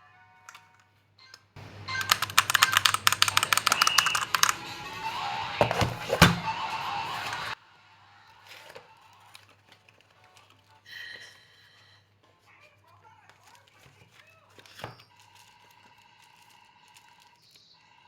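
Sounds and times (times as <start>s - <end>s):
mechanical keyboard typing: 1.9s - 4.8s.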